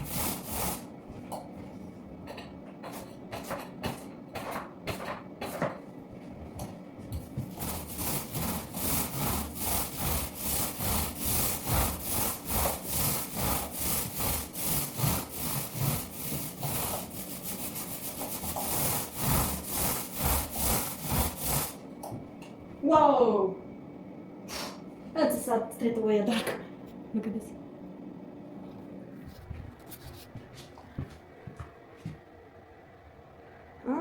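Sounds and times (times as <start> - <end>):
paint roller rasping on wall: 0.0 - 0.9, 7.3 - 21.8.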